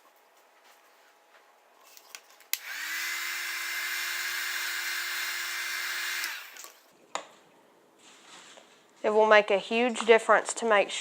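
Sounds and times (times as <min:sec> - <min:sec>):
blower switch click: 0:02.5 - 0:02.8
hot-air blower fan blowing: 0:02.5 - 0:06.8.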